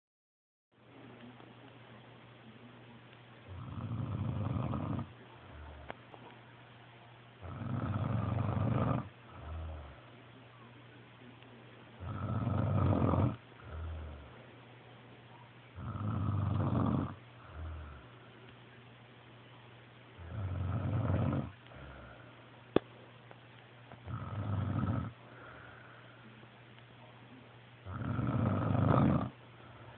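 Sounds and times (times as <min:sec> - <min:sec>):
loud rattling snores: 0:03.5 - 0:05.9, 0:07.4 - 0:10.0, 0:12.0 - 0:14.3, 0:15.8 - 0:18.0, 0:20.2 - 0:21.6, 0:24.1 - 0:25.2, 0:27.9 - 0:29.4
soft breath: 0:21.6 - 0:22.6, 0:25.1 - 0:26.5, 0:29.4 - 0:29.9.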